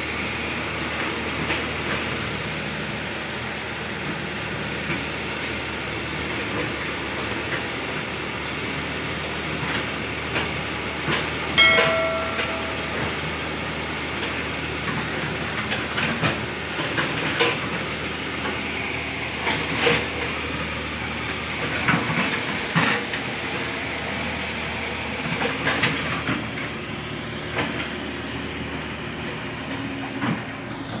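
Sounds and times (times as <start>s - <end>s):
loud ringing metallic clang: 11.6s - 13.8s.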